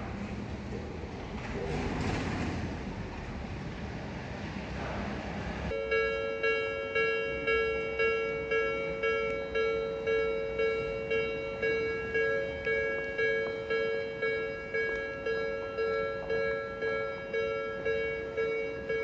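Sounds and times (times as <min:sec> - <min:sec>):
electronic crossing bell clanging: 0:05.7 - 0:19.0.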